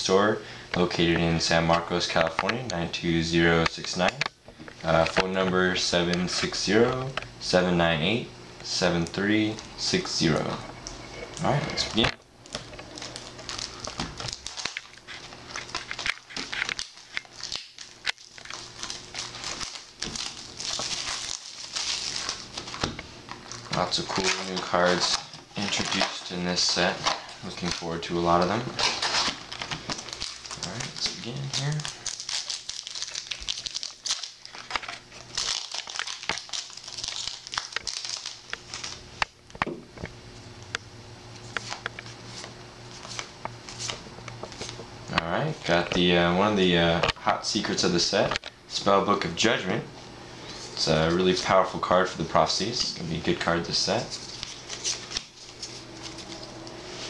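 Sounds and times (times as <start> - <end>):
plastic wrapping crinkling and tearing: 10.2 - 39.4, 41.4 - 44.8, 50.5 - 57.0.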